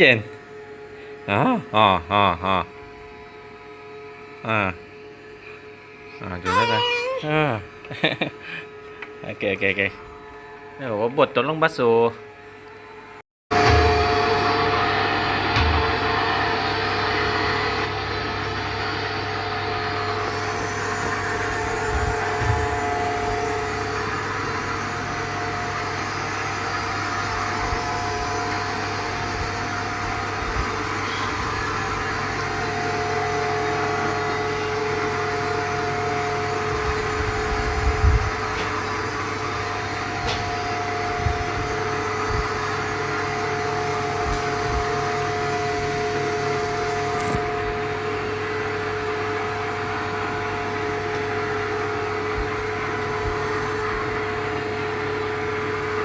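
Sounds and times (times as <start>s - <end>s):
machine hum: 12.2s - 56.0s.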